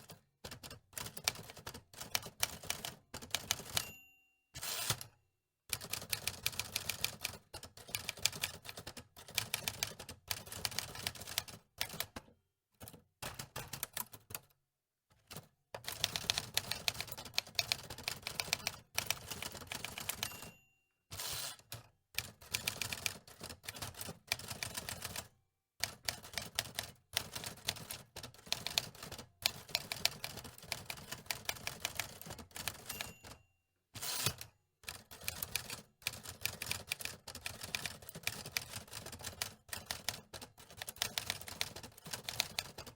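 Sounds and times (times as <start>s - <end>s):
typewriter keys clacking: 15.3s - 20.6s, 26.2s - 33.4s, 34.0s - 42.9s.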